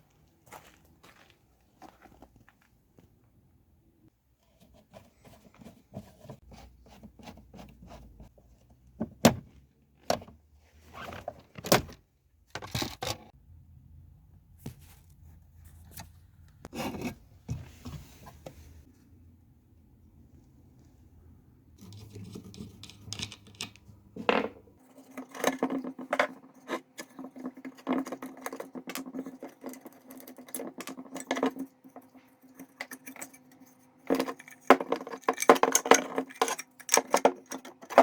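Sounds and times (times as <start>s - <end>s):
tools and parts clicking and knocking: 11.1s - 13.3s, 21.8s - 38.0s.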